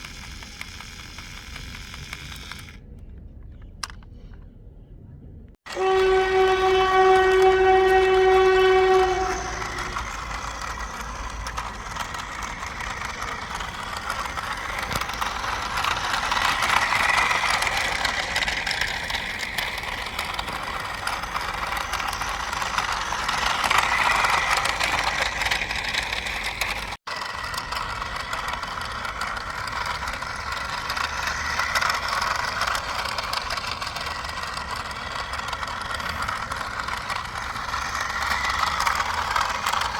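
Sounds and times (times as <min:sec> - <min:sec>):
toy train whirring and rattling: 0:00.0 - 0:03.0, 0:03.8 - 0:04.0, 0:05.6 - 0:39.9
toy train electronic horn: 0:05.7 - 0:26.8, 0:29.1 - 0:39.9.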